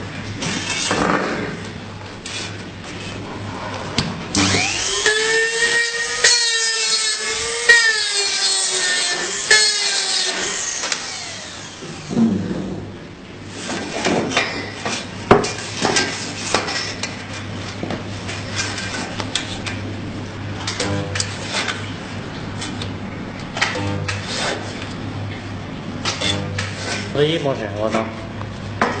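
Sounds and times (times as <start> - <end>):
notching machine motor whine: 4.3 - 12.2.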